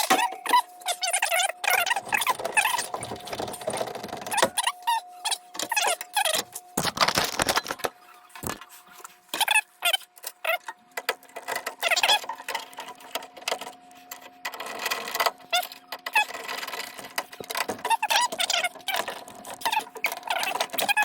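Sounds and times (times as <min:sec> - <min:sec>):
steady hum: 0:00.0 - 0:11.5.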